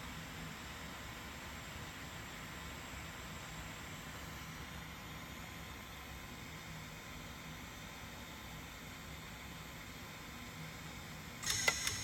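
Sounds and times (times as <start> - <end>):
printer whirring hiss: 11.4 - 12.0.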